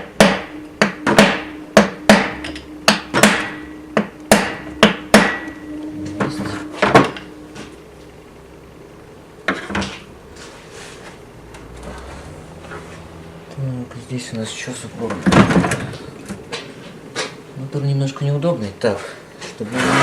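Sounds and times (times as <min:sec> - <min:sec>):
hammer striking metal: 0:00.0 - 0:07.8.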